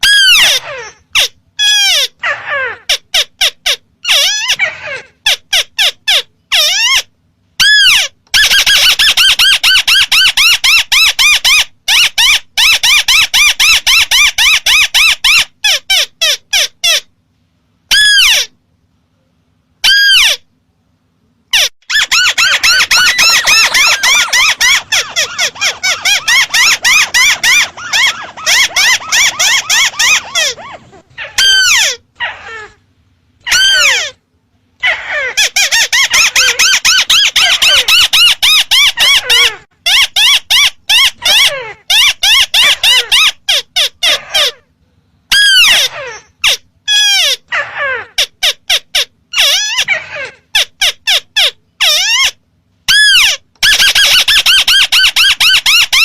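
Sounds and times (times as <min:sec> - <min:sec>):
crake calls: 0:21.5 - 0:32.8.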